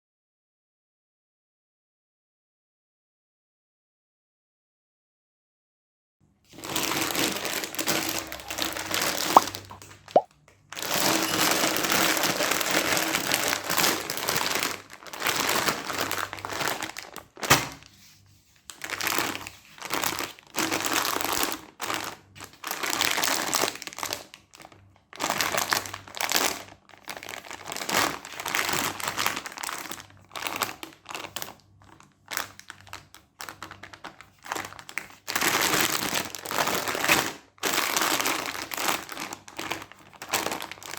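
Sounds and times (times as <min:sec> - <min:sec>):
plastic candy wrappers crinkling: 0:06.5 - 0:10.0, 0:10.7 - 0:17.8, 0:18.7 - 0:40.9.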